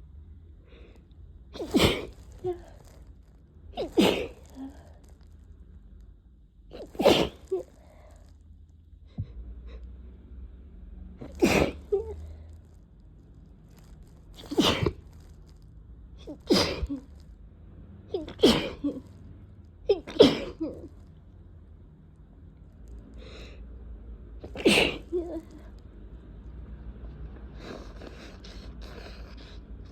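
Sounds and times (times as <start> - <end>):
person sneezing wetly: 1.6 - 2.7, 3.8 - 4.8, 6.7 - 7.7, 11.3 - 12.1, 14.4 - 15.0, 16.3 - 17.1, 18.2 - 19.0, 19.9 - 20.9, 24.4 - 25.6.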